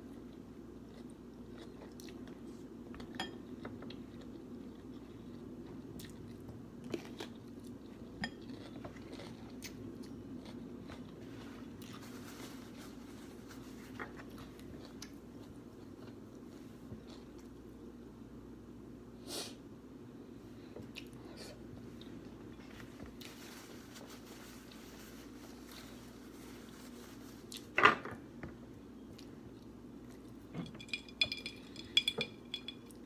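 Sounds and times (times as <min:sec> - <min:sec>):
person chewing food: 0:00.1 - 0:12.4, 0:13.8 - 0:17.8, 0:20.8 - 0:22.6.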